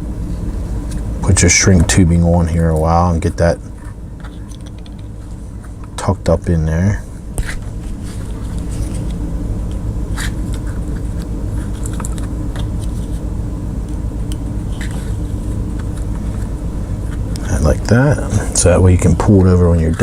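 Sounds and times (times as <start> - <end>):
low droning hum: 0.0 - 20.0
wires clicking and rustling: 2.7 - 6.1, 7.3 - 20.0.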